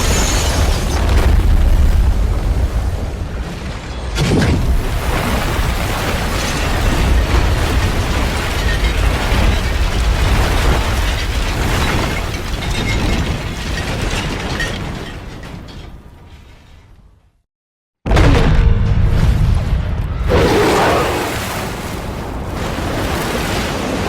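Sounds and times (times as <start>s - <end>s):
deep rumble: 18.1s - 22.6s
monster roar sound effect: 20.3s - 21.5s.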